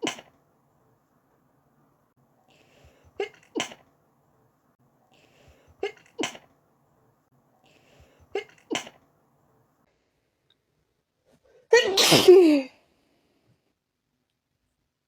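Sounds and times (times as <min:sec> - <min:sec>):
person sneezing: 0:03.1 - 0:03.8, 0:05.7 - 0:06.5, 0:08.2 - 0:09.0, 0:11.7 - 0:12.7.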